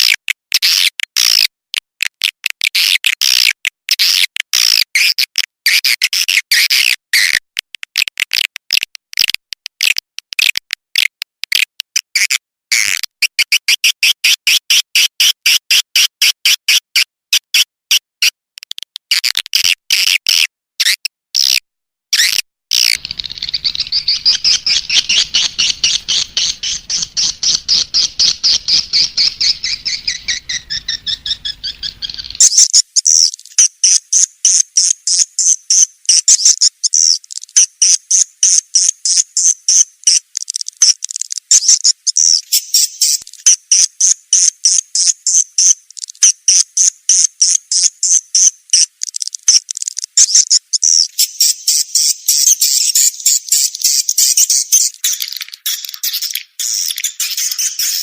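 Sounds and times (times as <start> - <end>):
faint low hum: 23.0 - 32.3.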